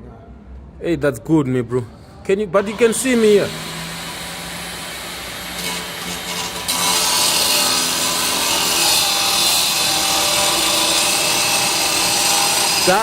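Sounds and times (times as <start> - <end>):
power tool cutting: 2.6 - 13.0.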